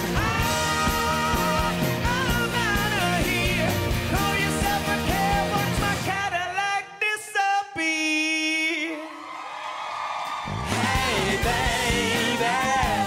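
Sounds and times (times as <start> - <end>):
live pop-rock band: 0.0 - 6.6, 10.5 - 13.0
lead vocals: 0.0 - 9.4, 10.4 - 13.0.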